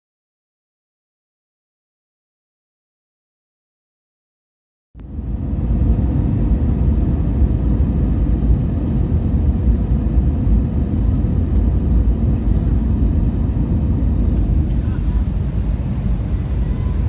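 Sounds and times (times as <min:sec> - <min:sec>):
airplane cabin rumble: 0:05.0 - 0:17.0.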